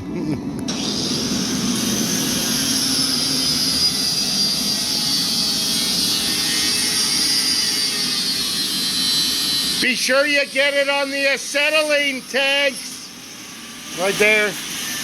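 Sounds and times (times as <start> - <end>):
grinder grinding steel: 0.7 - 15.0.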